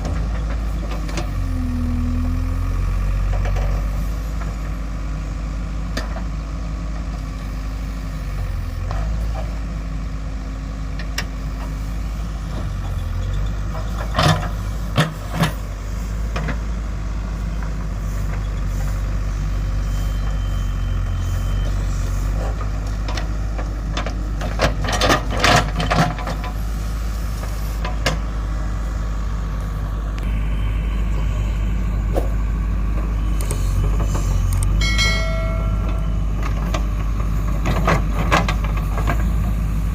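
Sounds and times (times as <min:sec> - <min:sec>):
diesel engine running: 0:00.0 - 0:39.9
sharp metallic clanks: 0:34.8 - 0:36.6.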